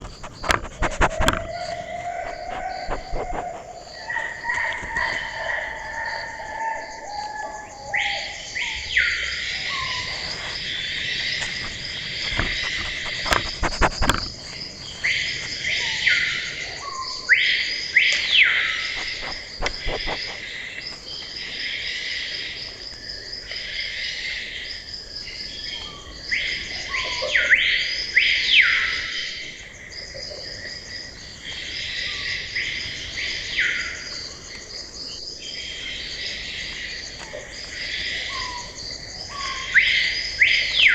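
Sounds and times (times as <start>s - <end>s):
pulsing insect chorus: 0.0s - 40.9s.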